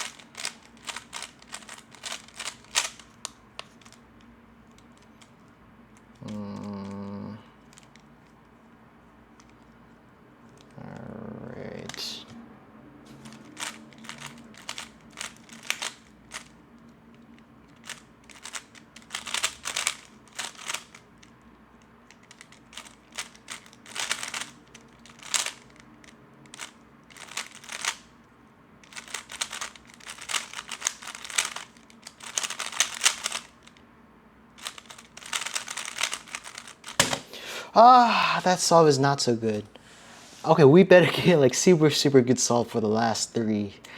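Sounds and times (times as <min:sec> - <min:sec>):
puzzle cube clicking: 0:00.0 - 0:04.0, 0:04.6 - 0:08.4, 0:13.2 - 0:16.6, 0:17.4 - 0:21.3, 0:22.1 - 0:28.0, 0:28.8 - 0:33.8, 0:34.6 - 0:37.4.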